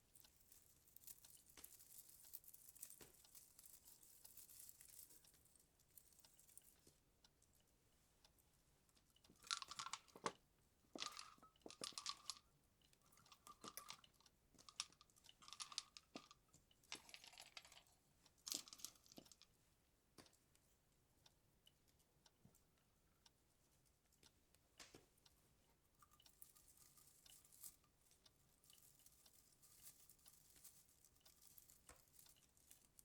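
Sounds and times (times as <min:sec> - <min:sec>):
baubles rustling and clicking: 0:00.0 - 0:07.0, 0:09.0 - 0:19.5, 0:25.9 - 0:33.0.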